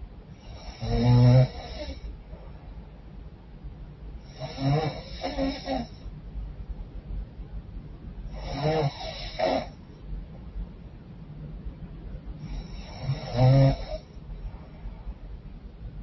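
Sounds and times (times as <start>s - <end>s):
low steady hum: 0.0s - 16.0s
woman snoring: 0.4s - 2.1s, 4.3s - 6.0s, 8.3s - 9.8s, 12.5s - 14.0s.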